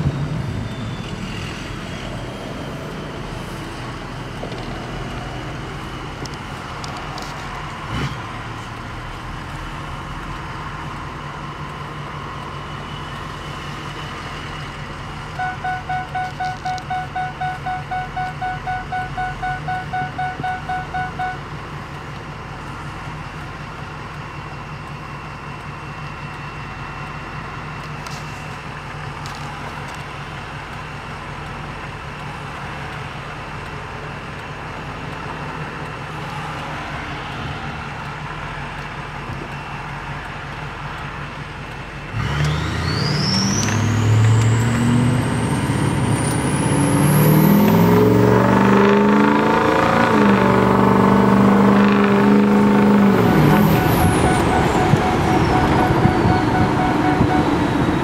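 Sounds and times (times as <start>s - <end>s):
diesel engine idling and revving: 0.0s - 58.0s
turbo whine: 12.7s - 21.7s, 42.9s - 58.0s
pulsing chime: 52.9s - 58.0s.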